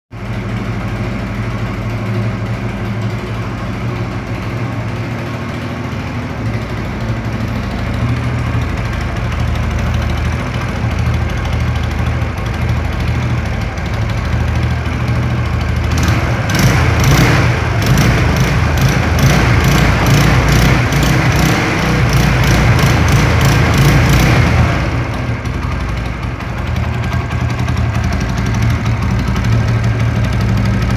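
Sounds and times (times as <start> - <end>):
motorcycle engine idling: 0.1 - 30.9.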